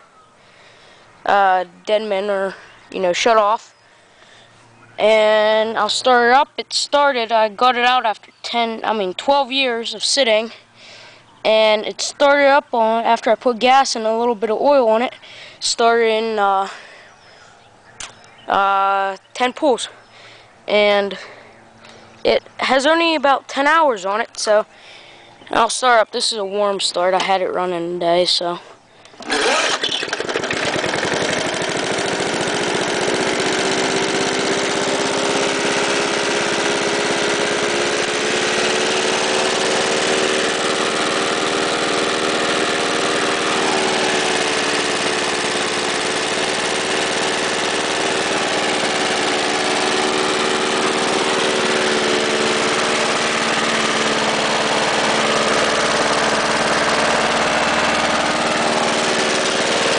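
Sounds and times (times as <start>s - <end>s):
lawn mower engine running: 0.1s - 17.0s, 29.0s - 59.9s.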